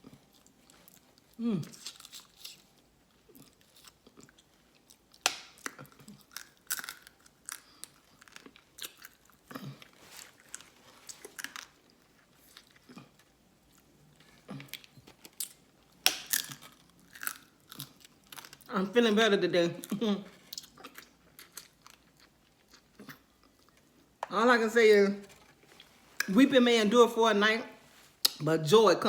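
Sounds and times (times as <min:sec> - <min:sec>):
person chewing and crunching crab: 0:00.0 - 0:18.7, 0:19.8 - 0:24.2.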